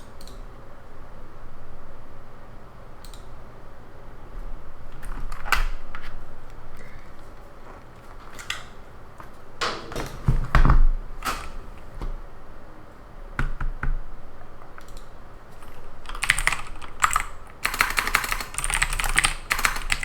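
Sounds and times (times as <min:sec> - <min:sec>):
steady low hum: 0:00.0 - 0:20.0
keyboard and mouse clicks: 0:00.2 - 0:00.4, 0:03.0 - 0:03.3, 0:14.7 - 0:20.0.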